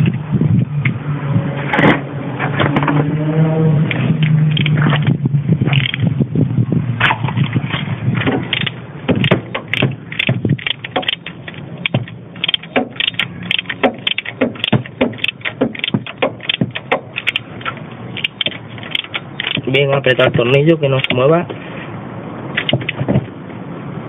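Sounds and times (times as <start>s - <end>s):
wrench metal clicks and clinks: 5.7s - 6.0s, 8.5s - 20.3s, 20.9s - 21.3s.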